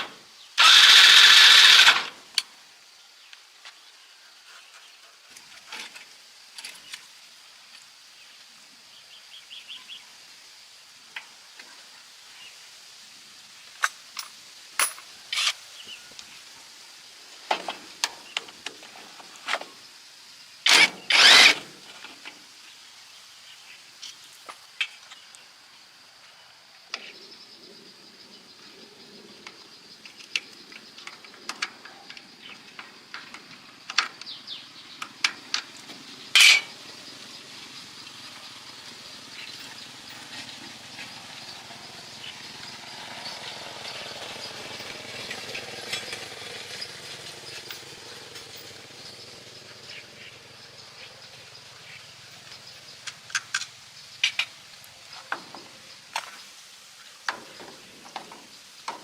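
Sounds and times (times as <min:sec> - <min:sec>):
tools and metal parts clicking: 0:36.4 - 0:36.7.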